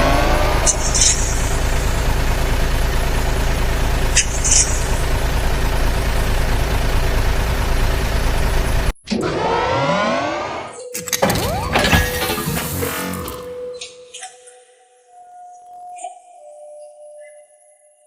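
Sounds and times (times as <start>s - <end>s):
truck engine rumble: 0.0s - 13.8s.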